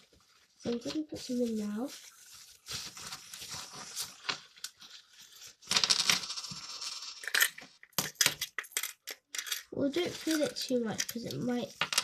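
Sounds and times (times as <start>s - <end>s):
coins clinking into plastic capsule: 5.7s - 12.0s.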